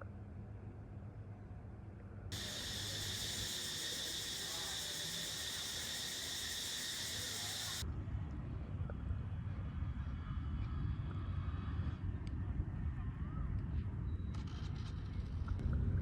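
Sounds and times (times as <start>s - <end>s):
shrill insect chorus: 2.3s - 7.8s.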